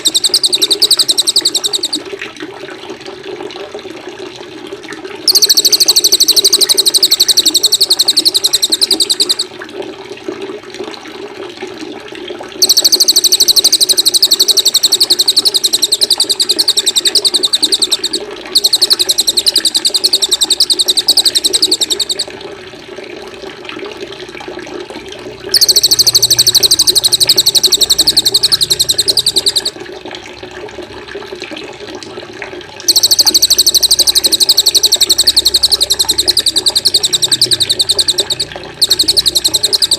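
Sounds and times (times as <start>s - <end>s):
songbird buzzing trill: 0.0s - 2.0s, 5.3s - 9.5s, 12.6s - 22.3s, 25.5s - 29.7s, 32.9s - 39.9s
running water: 4.6s - 10.9s, 12.6s - 30.8s, 32.8s - 39.9s.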